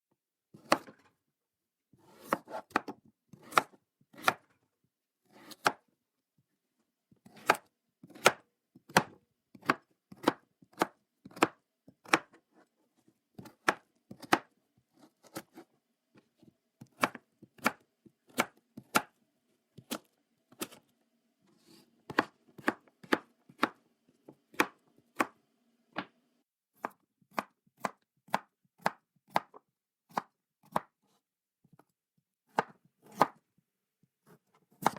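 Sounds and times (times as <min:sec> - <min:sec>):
knife chopping on wooden board: 0:00.6 - 0:01.0, 0:02.0 - 0:04.5, 0:05.2 - 0:05.8, 0:07.2 - 0:12.6, 0:13.4 - 0:15.7, 0:16.4 - 0:19.2, 0:19.8 - 0:20.9, 0:21.5 - 0:25.4, 0:26.8 - 0:31.1, 0:32.5 - 0:33.4, 0:34.2 - 0:34.9.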